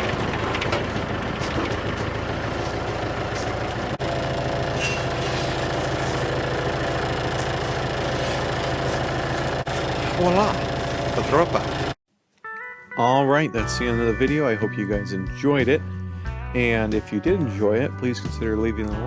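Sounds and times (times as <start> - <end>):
snowblower engine running: 0.0 - 12.0.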